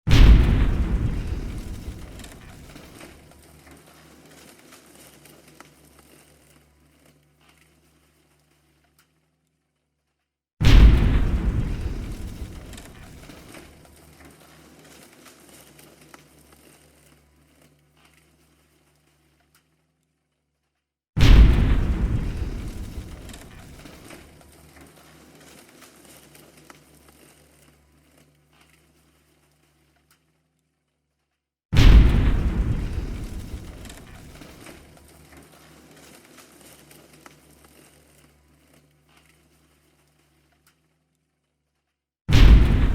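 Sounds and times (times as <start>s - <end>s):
low explosion rumble: 0.1s - 3.0s, 10.6s - 13.6s, 21.2s - 24.4s, 31.8s - 34.9s, 42.3s - 42.9s
falling debris crackles: 0.1s - 9.4s, 10.6s - 19.9s, 21.2s - 30.4s, 31.7s - 42.9s.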